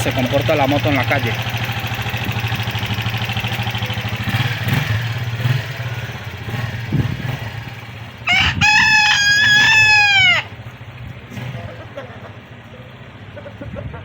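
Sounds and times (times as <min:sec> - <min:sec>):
motorcycle engine idling: 0:00.0 - 0:14.0
rooster crowing: 0:08.2 - 0:10.6.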